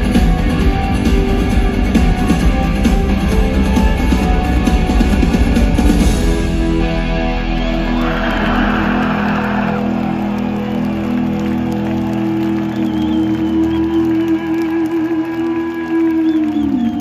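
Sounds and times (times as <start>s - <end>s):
crowd cheering faintly: 7.5s - 17.0s.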